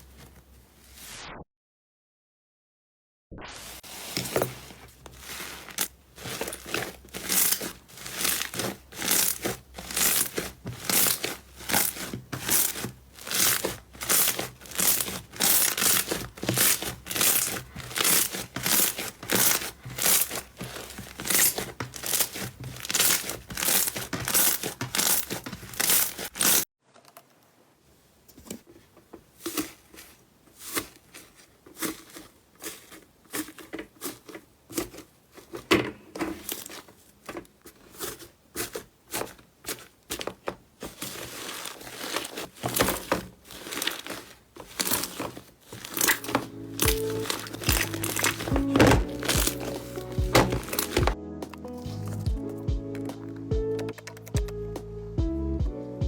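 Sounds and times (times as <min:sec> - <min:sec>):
slime squelching by hand: 0:03.7 - 0:26.7, 0:36.3 - 0:53.3.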